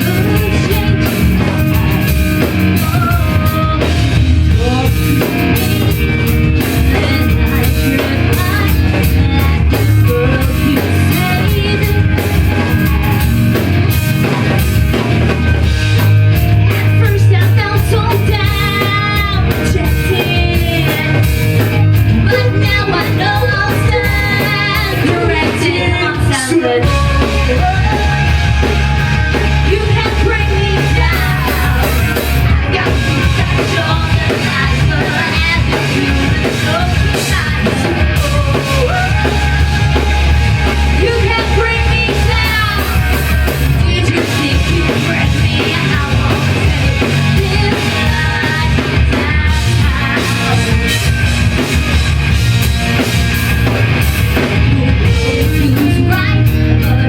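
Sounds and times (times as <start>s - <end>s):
person singing: 0.0s - 13.2s, 15.9s - 51.2s, 54.8s - 57.0s
rock band playing live: 0.0s - 57.0s.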